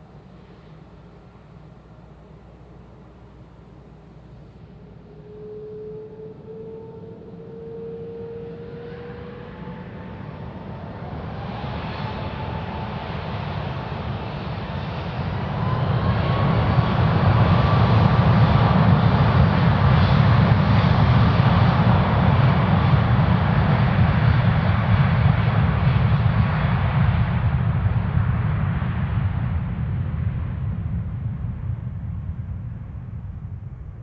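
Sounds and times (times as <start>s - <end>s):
jet engines at takeoff: 0.0s - 34.0s.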